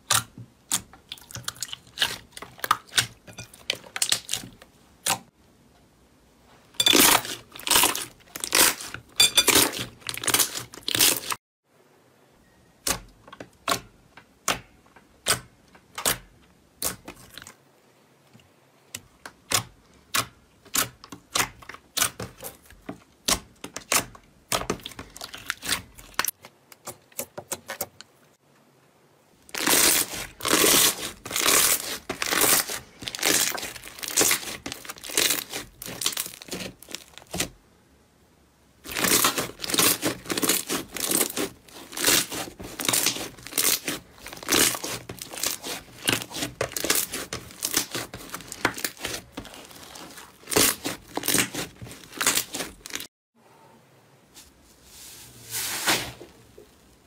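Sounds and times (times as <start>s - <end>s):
slime crackling: 6.8s - 11.4s, 29.5s - 37.5s, 38.8s - 53.1s.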